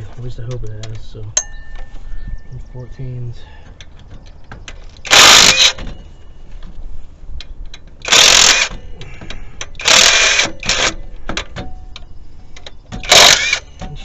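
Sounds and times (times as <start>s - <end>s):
impact wrench bursts: 5.0s - 5.9s, 8.0s - 8.8s, 9.7s - 11.0s, 13.0s - 13.7s.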